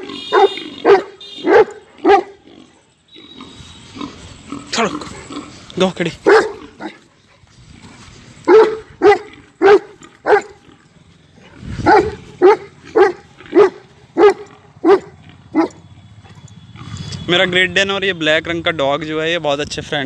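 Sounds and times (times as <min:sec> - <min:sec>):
dog barking: 0:00.2 - 0:02.4, 0:06.2 - 0:07.0, 0:08.5 - 0:10.6, 0:11.8 - 0:16.4.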